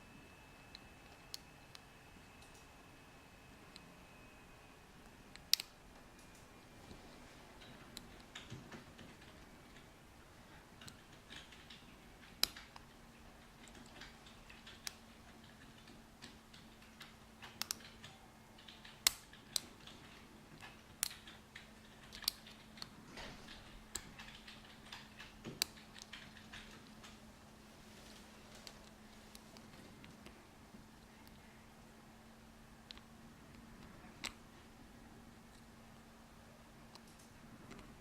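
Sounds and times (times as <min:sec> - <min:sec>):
faint steady hum: 0:00.0 - 0:38.0
lock picks clicking and scratching: 0:10.5 - 0:27.2.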